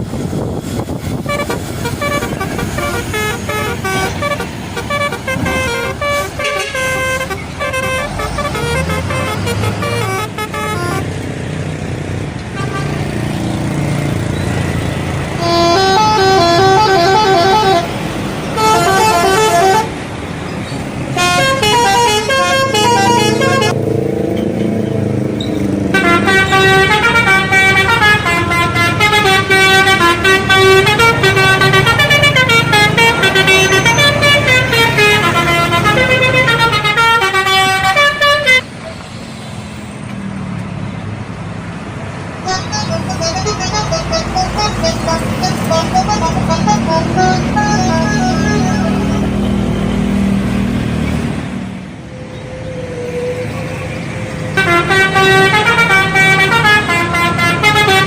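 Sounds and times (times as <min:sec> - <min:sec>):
bus engine rumble: 0:00.0 - 0:58.0
air horn playing melodic notes: 0:01.2 - 0:11.1, 0:15.2 - 0:20.0, 0:21.1 - 0:23.8, 0:25.9 - 0:38.7, 0:42.4 - 0:49.7, 0:54.5 - 0:58.0.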